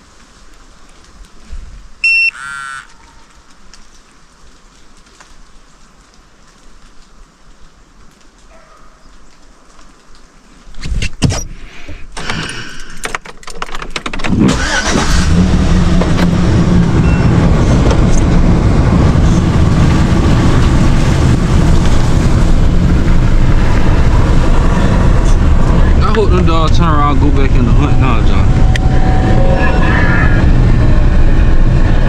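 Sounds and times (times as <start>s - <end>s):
road noise: 0.0s - 32.0s
clicks and knocks: 10.8s - 14.4s
vehicle engine: 14.2s - 32.0s.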